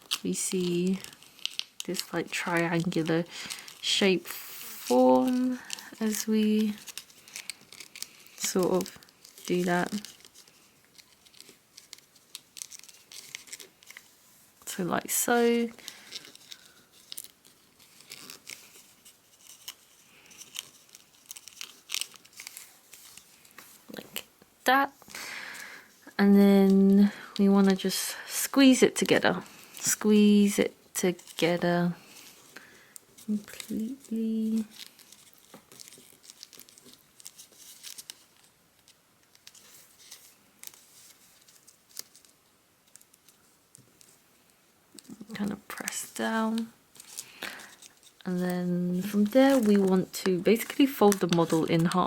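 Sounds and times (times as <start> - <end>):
crisp paper crackles: 0.0 - 52.0
paper crinkling as folded: 0.0 - 52.0.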